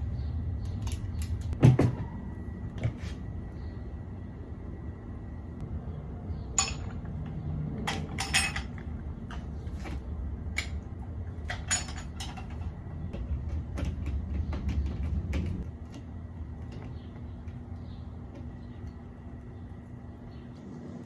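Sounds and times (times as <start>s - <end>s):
low steady hum: 0.0s - 21.0s
metal hardware clinking: 6.6s - 9.5s, 11.4s - 12.9s.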